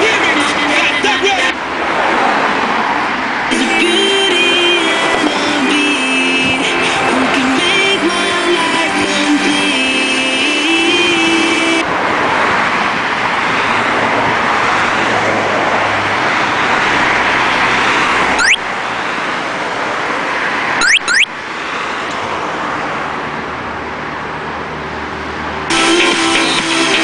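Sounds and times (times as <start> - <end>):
music: 3.6 - 11.8, 25.7 - 27.0
rising chirps: 18.4 - 18.6, 20.8 - 21.3.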